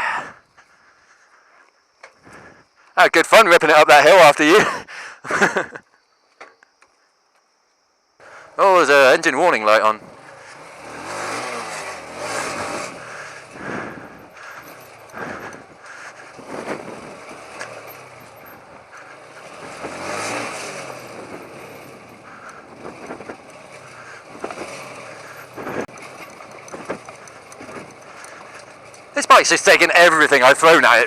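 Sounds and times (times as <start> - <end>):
wind and road noise: 0.0 - 31.0
motorcycle engine running: 8.2 - 31.0.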